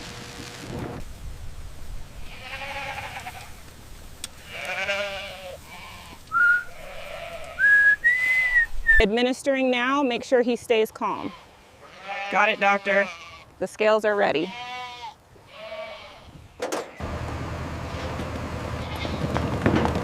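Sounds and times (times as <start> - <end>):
goats bleating: 2.2 - 3.6, 4.4 - 7.8, 11.0 - 13.6, 14.4 - 17.1, 17.9 - 19.4.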